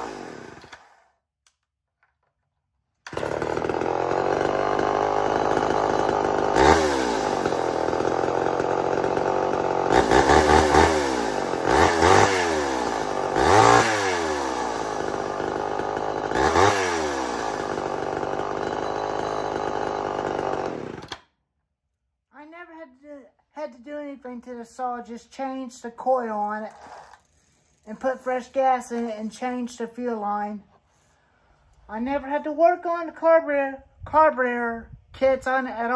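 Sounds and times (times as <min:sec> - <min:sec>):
chainsaw revving: 0:00.0 - 0:01.1, 0:03.1 - 0:21.2, 0:26.6 - 0:29.2.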